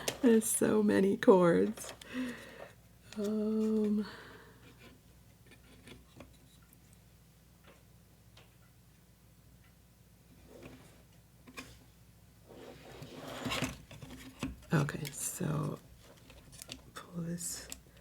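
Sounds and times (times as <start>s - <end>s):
woman humming: 3.1s - 4.4s
faint clicks and taps of handling parts: 17.6s - 18.0s.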